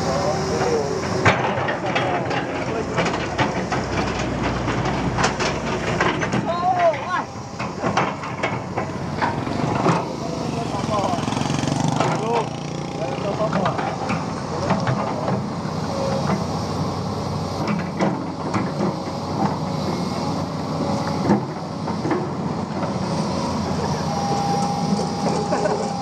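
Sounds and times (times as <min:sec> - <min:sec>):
diesel machinery running: 0:00.0 - 0:26.0
thin steady whine: 0:19.4 - 0:26.0.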